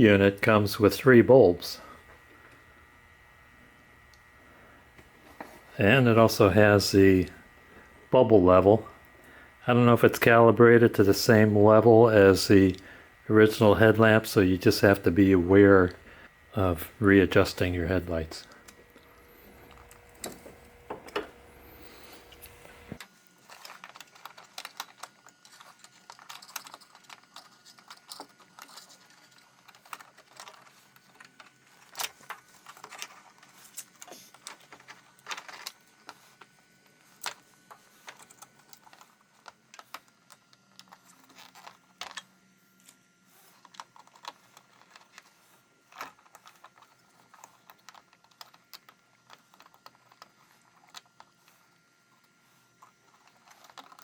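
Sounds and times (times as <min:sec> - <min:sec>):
plastic parts clicking and tapping: 0:23.0 - 0:36.5, 0:37.2 - 0:54.0.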